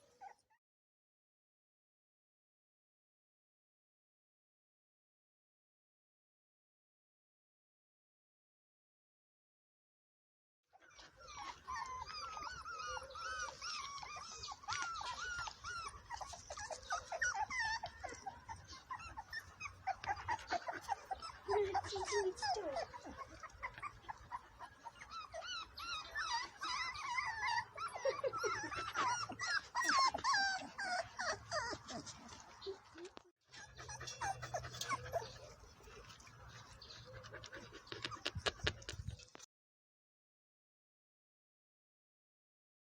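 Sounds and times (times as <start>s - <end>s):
puppies whining and yipping: 0.0s - 0.6s, 10.7s - 39.5s.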